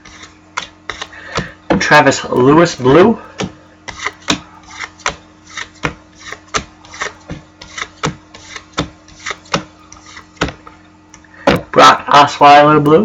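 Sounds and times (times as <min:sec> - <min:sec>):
cards rubbing together: 0:00.0 - 0:01.2, 0:03.8 - 0:10.5.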